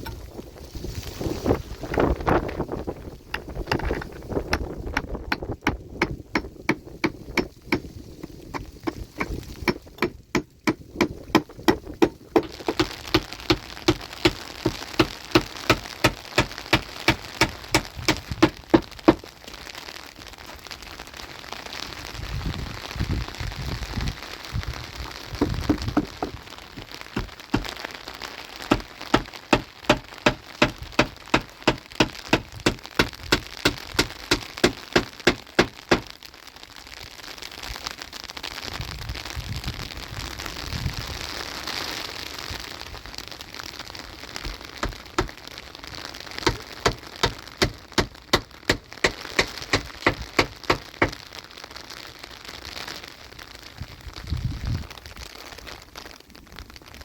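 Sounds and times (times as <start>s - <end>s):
wind noise on microphone: 0.0s - 13.5s, 17.1s - 19.2s, 21.8s - 27.7s, 38.6s - 41.7s, 53.7s - 55.4s.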